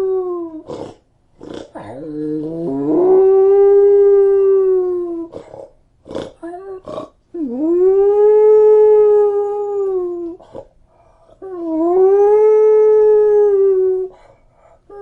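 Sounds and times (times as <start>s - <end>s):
dog howling: 1.9s - 5.4s.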